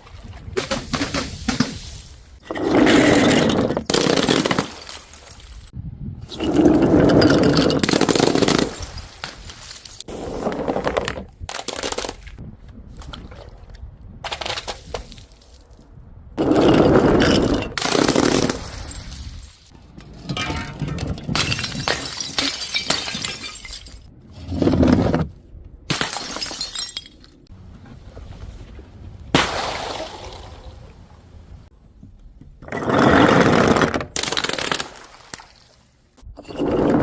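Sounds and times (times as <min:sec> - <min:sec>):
glass bottles shattering: 0:03.1 - 0:05.7, 0:06.4 - 0:10.1, 0:20.3 - 0:24.1, 0:25.9 - 0:27.5.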